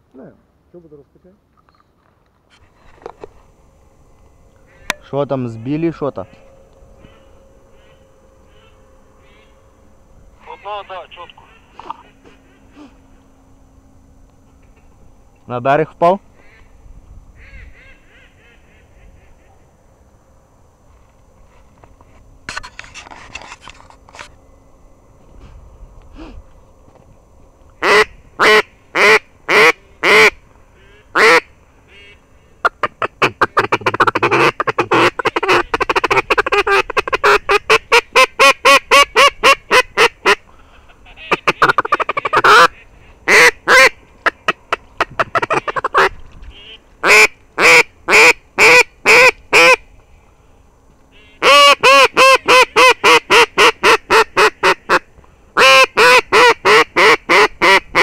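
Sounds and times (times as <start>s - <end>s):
duck quacking: 17.4s - 19.6s, 27.8s - 49.8s, 51.1s - 58.0s.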